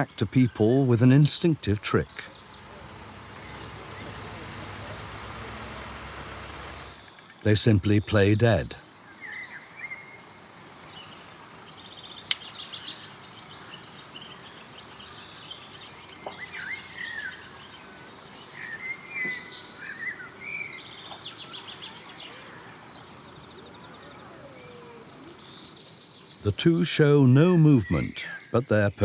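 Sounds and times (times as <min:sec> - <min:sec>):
songbirds chirping and trilling: 0:00.0 - 0:29.0.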